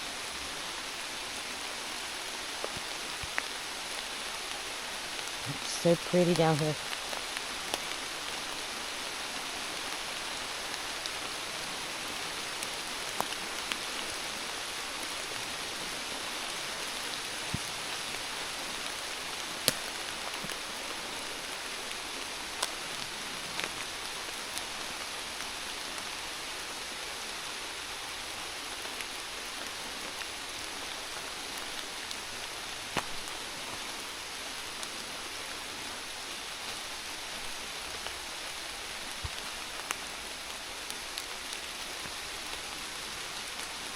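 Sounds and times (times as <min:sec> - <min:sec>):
steady rain hiss: 0:00.0 - 0:43.9
raindrops ticking: 0:02.6 - 0:08.5, 0:12.6 - 0:13.9, 0:17.2 - 0:24.8.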